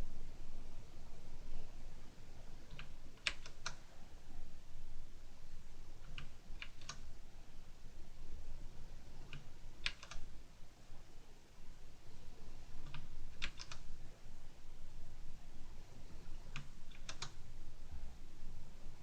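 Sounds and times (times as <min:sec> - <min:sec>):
mechanical keyboard keystrokes: 0:02.7 - 0:03.8, 0:06.0 - 0:07.0, 0:09.3 - 0:10.2, 0:12.9 - 0:13.8, 0:16.5 - 0:17.4.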